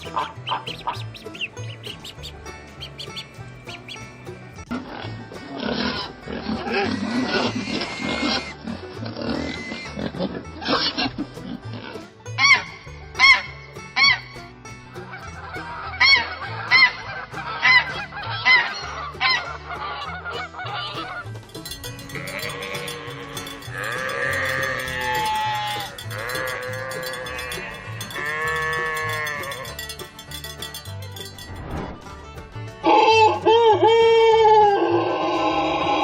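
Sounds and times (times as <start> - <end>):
geese honking: 0.0 - 4.2, 15.0 - 21.3, 22.0 - 29.7
goats or sheep bleating: 5.7 - 8.6, 9.2 - 11.0, 21.9 - 29.8.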